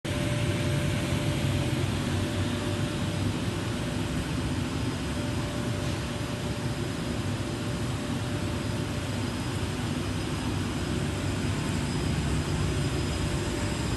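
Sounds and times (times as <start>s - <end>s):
faint constant tone: 0.1s - 13.9s
grinding machine running: 9.4s - 13.9s.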